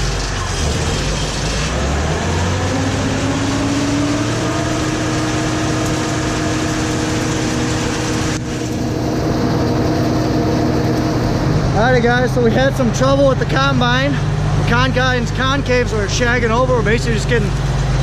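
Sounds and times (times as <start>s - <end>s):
combine engine running: 0.0s - 18.0s.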